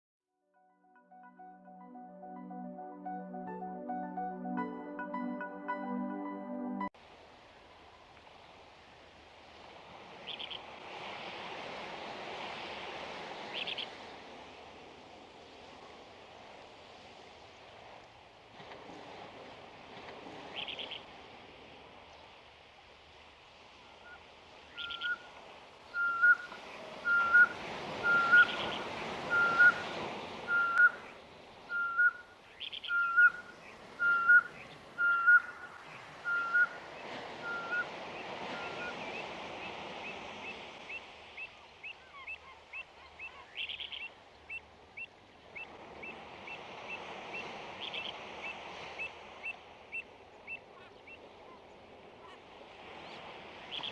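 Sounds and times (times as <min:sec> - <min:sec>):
bird whistled note: 0:26.0 - 0:26.4, 0:27.0 - 0:29.9, 0:30.5 - 0:31.0, 0:31.7 - 0:32.2, 0:34.0 - 0:35.6, 0:36.2 - 0:36.8, 0:37.4 - 0:37.9
harsh bird calls: 0:26.0 - 0:31.0, 0:31.7 - 0:36.8.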